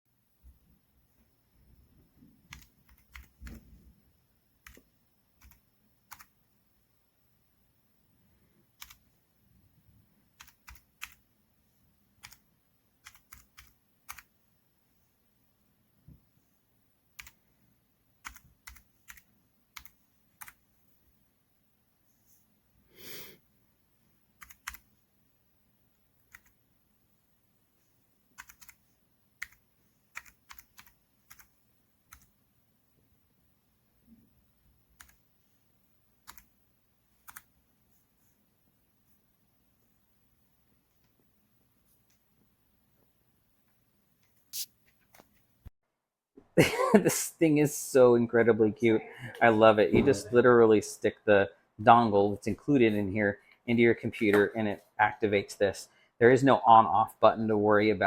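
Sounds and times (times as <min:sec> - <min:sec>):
keypad keys clicking: 0:02.5 - 0:03.6, 0:10.4 - 0:11.2, 0:13.0 - 0:14.3, 0:18.2 - 0:19.2, 0:24.4 - 0:24.8, 0:28.4 - 0:28.8, 0:29.4 - 0:31.5.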